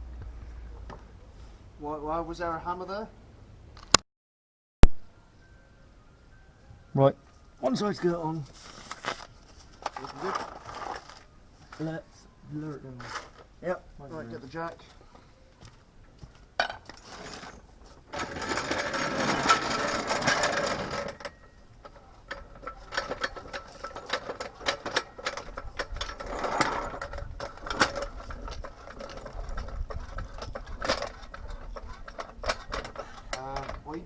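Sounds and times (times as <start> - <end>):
car jack rapid mechanical rattle: 18.1 - 21.4
metal clicks and knocks: 19.4 - 34.0.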